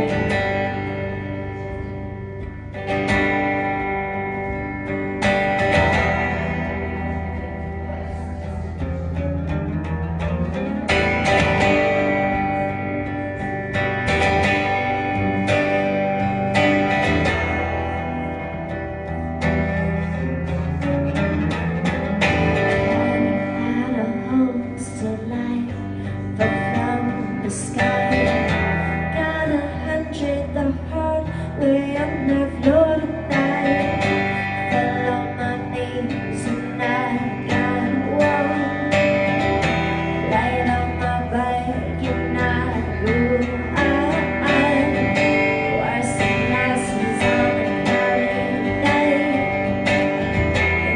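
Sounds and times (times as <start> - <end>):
strummed acoustic guitar: 0.0 - 50.9
person singing: 22.3 - 50.9.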